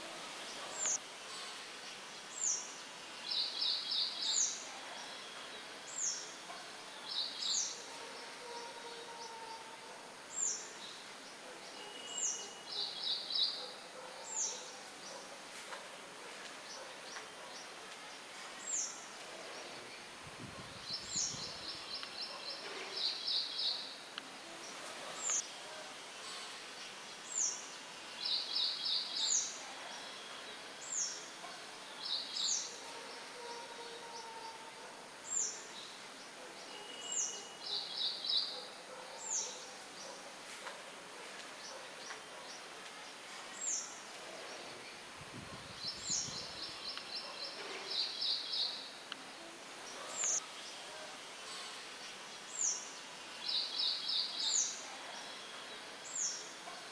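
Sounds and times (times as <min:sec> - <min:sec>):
songbirds singing: 0:00.0 - 0:01.0, 0:16.6 - 0:25.5, 0:41.5 - 0:50.9, 0:52.0 - 0:56.9
wind in leaves: 0:00.0 - 0:07.9, 0:14.3 - 0:33.4, 0:34.6 - 0:56.9.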